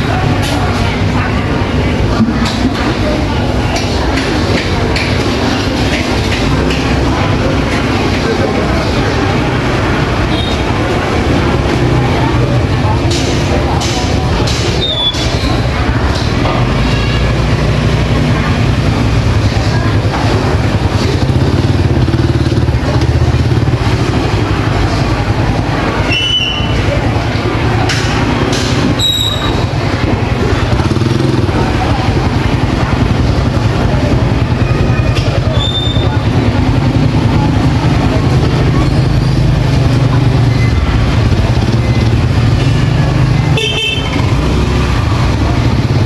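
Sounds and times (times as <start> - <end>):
road traffic rumble: 0.0 - 46.0
vehicle horn tooting: 43.5 - 44.4.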